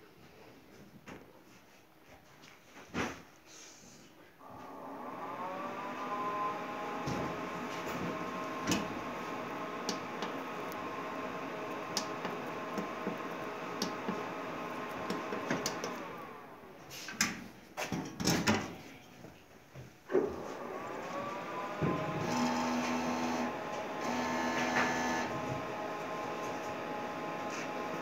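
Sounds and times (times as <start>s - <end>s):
printer motors whining: 4.5s - 16.7s, 20.4s - 28.0s.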